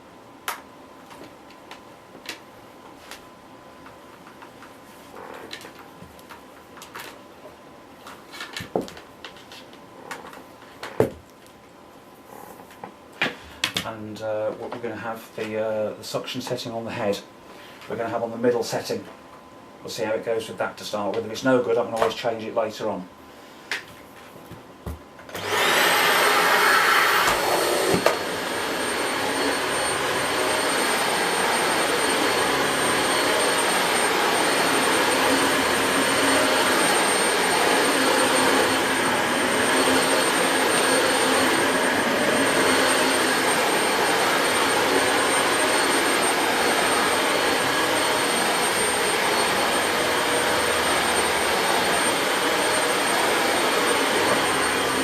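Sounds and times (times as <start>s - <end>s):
vacuum cleaner running: 24.9s - 55.0s.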